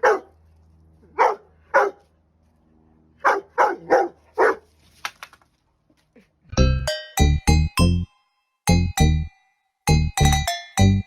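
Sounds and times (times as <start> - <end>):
dog barking: 0.0 - 0.4, 1.1 - 2.0, 3.2 - 4.7.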